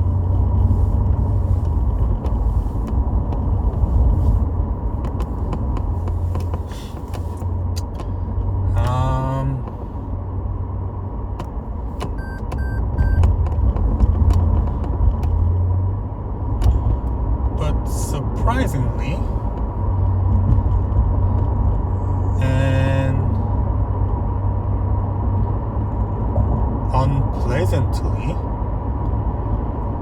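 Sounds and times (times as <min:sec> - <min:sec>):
car engine rumble: 0:00.0 - 0:30.0
short beeps: 0:12.2 - 0:13.2.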